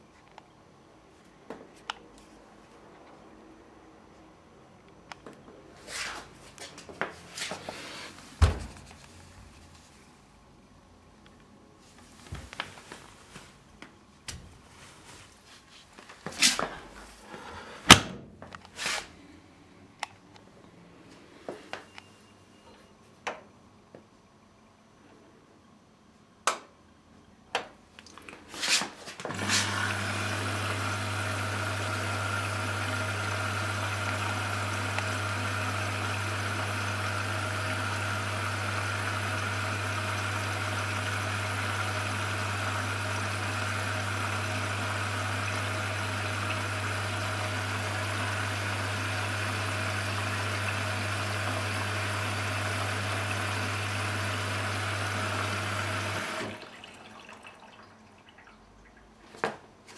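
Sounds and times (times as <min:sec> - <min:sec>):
washing machine running: 0:29.3 - 0:58.5.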